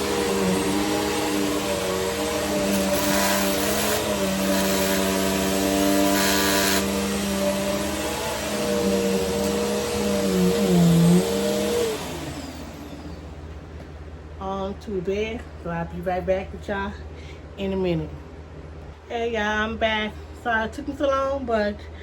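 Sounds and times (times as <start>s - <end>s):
vacuum cleaner running: 0.0s - 13.6s.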